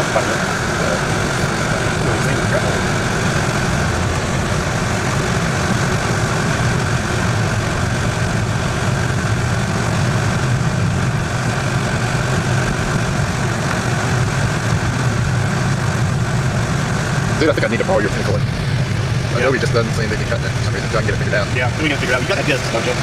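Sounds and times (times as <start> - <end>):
car engine and road noise: 0.0 - 23.0.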